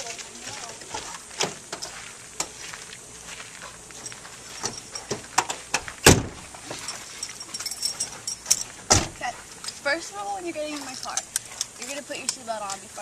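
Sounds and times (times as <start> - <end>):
car door clicks and knocks: 5.1 - 6.4
car door shutting thud: 5.1 - 6.4, 8.8 - 9.2.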